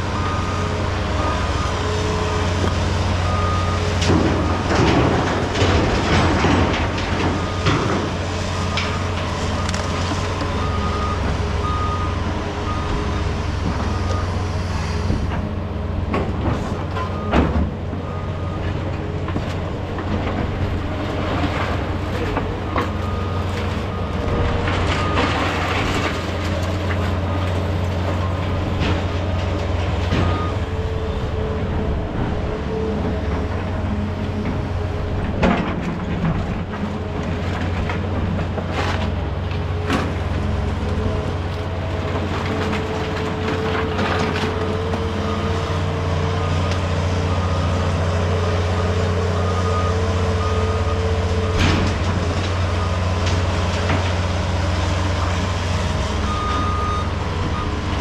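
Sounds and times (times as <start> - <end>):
diesel demolition machinery running: 0.0 - 58.0
concrete debris clanking and scraping: 4.0 - 10.4, 15.1 - 30.6, 34.4 - 45.1
backup alarm beeping: 56.2 - 58.0.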